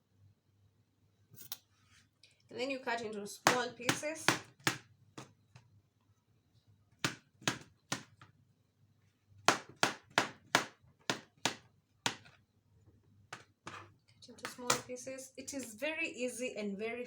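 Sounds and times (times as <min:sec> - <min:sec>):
knife chopping on cutting board: 0:07.0 - 0:08.2, 0:09.5 - 0:12.4.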